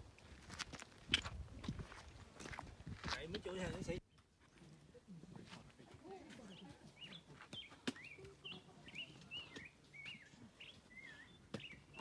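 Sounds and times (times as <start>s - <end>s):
songbird chirping: 3.9s - 12.0s.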